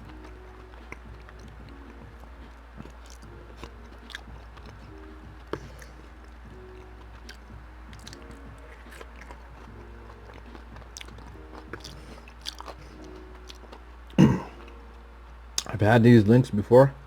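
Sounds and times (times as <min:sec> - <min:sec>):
chewing and wet mouth smacks: 0:02.8 - 0:13.8.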